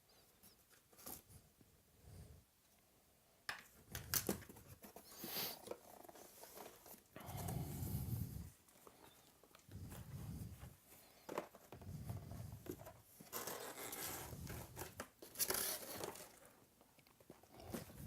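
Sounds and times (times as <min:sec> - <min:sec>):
packaging rustling and crinkling: 0:03.9 - 0:07.8, 0:08.4 - 0:18.0.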